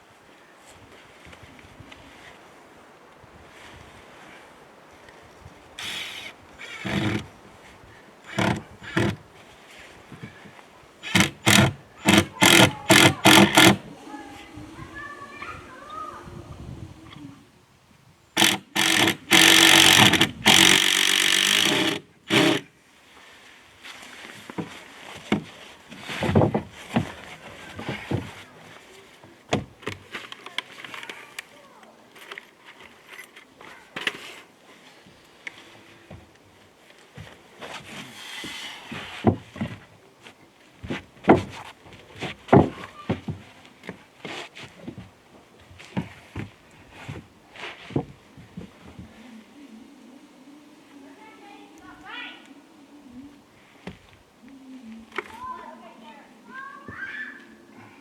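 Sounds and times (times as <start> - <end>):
power drill running: 5.8 - 7.2, 8.3 - 9.2, 11.0 - 17.3, 18.4 - 22.7
wooden boards scraping: 5.8 - 7.3, 8.2 - 9.2, 11.0 - 17.4, 18.4 - 22.7
wood knocking on wood: 6.8 - 7.3, 8.3 - 9.2, 11.0 - 17.2, 18.4 - 22.6.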